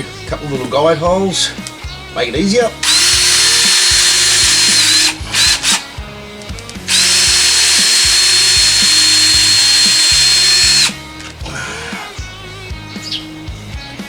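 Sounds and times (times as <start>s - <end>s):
power drill whine: 2.8s - 11.1s.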